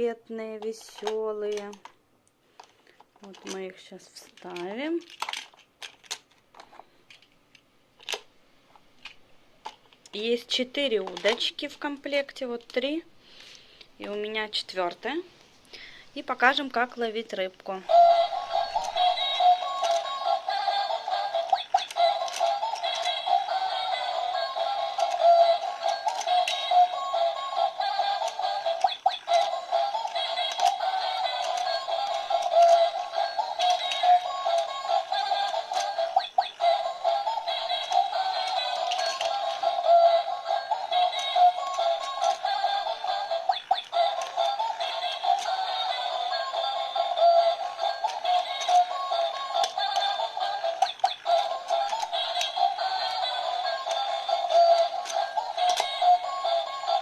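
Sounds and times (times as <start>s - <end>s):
tinny electronic toy tune: 17.9s - 57.0s.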